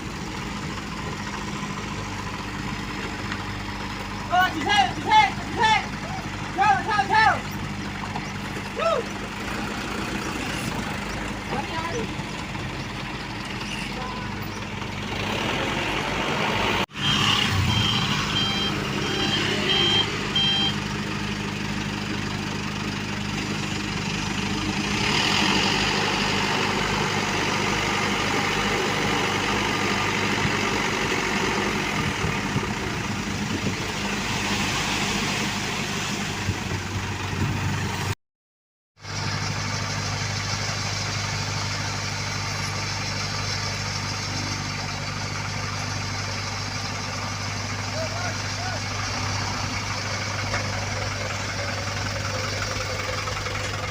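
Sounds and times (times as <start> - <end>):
diesel engines running: 0.0 - 38.2, 39.0 - 53.9
reversing alarm beeping: 17.0 - 20.8.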